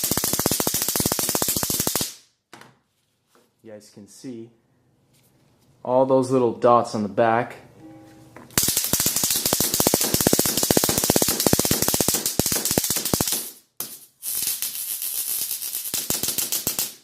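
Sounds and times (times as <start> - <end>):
stun gun crackling: 0.0 - 2.2, 8.5 - 17.0.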